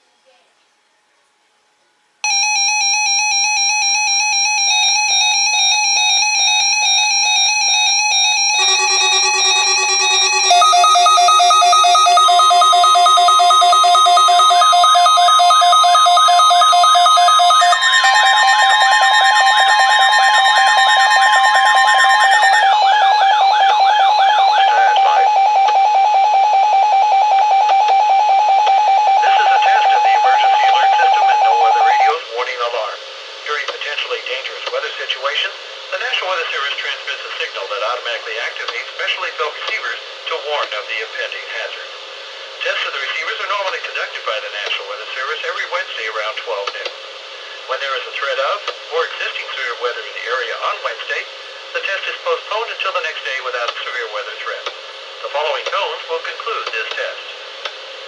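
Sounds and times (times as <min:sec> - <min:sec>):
shrill electronic alert beeping: 0:02.3 - 0:25.1
faint broadcast voice: 0:29.2 - 0:32.8.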